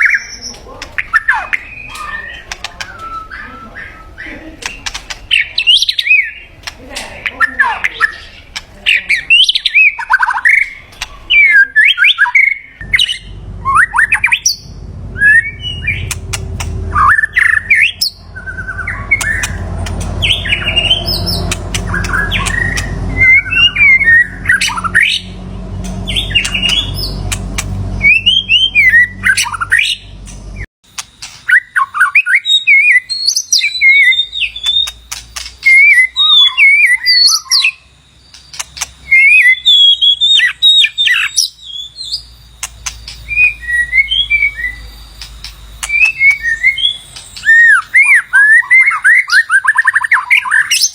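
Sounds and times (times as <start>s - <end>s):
bird singing whistled notes: 0.0s - 6.5s, 9.2s - 30.2s, 31.0s - 50.9s
low rumble: 12.8s - 30.7s.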